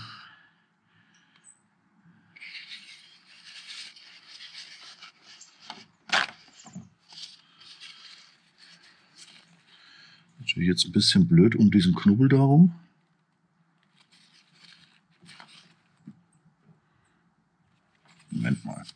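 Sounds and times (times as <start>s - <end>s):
scraping and wiping sealant: 2.4s - 10.0s.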